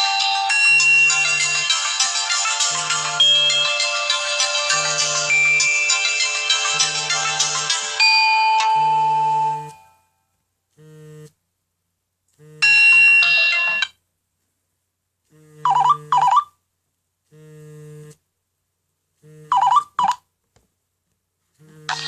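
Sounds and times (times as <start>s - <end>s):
phone vibration buzzing: 2.6s - 3.6s, 4.7s - 5.6s, 6.6s - 7.9s, 8.6s - 9.8s, 10.8s - 11.4s, 12.4s - 12.7s, 15.3s - 16.4s, 17.3s - 18.2s, 19.2s - 20.1s, 21.6s - 22.0s.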